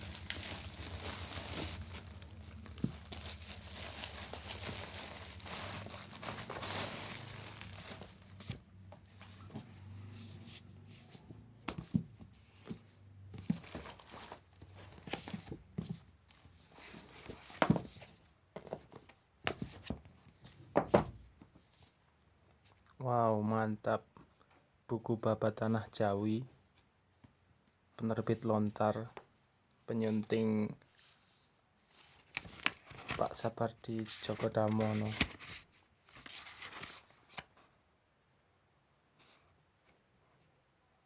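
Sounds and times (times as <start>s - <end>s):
packaging rustling and crinkling: 0.0s - 8.6s, 13.4s - 18.2s, 32.0s - 33.4s.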